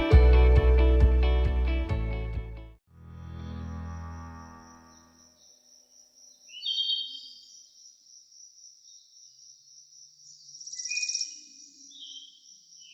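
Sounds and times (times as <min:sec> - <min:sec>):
insects trilling: 0:04.7 - 0:12.9.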